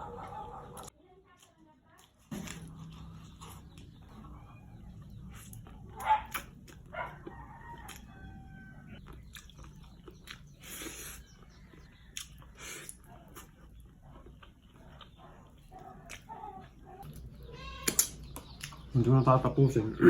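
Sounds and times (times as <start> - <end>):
person chewing: 2.0 - 18.9
rooster crowing: 7.1 - 9.0.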